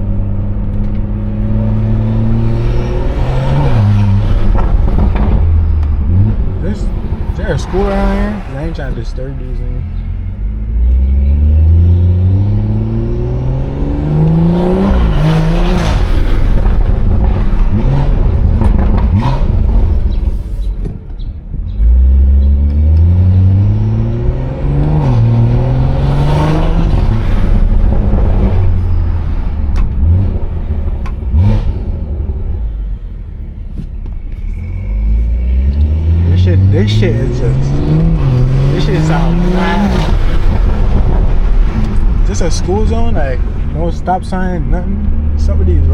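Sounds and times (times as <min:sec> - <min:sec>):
car engine revving: 0:00.0 - 0:45.9
exhaust cracks: 0:00.0 - 0:45.9.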